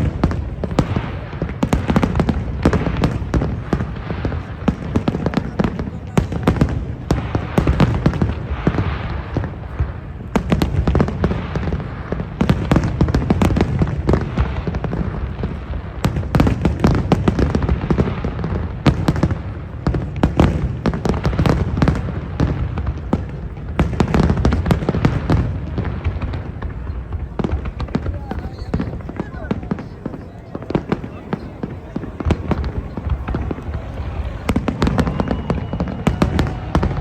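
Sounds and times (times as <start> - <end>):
fireworks bangs and crackles: 0.0 - 37.0
booming shells rumble: 24.3 - 37.0.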